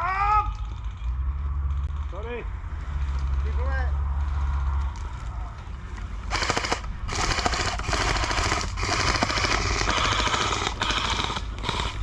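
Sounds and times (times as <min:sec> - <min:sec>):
airsoft guns firing rapid bursts: 0:06.3 - 0:12.0.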